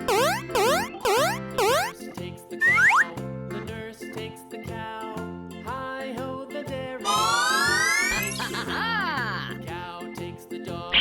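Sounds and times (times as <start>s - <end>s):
cartoon boing effects: 0.0s - 1.9s, 2.6s - 3.1s
light children's music: 0.0s - 11.0s
rising whistle-like glides: 2.6s - 3.2s.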